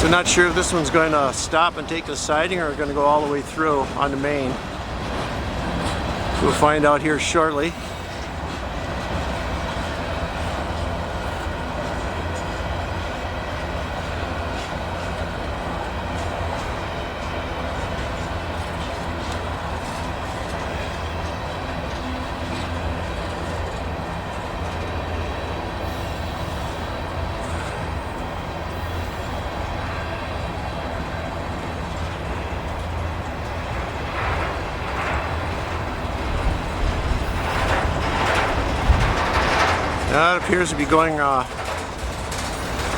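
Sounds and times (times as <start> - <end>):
freight train rumbling on rails: 0.0 - 42.9.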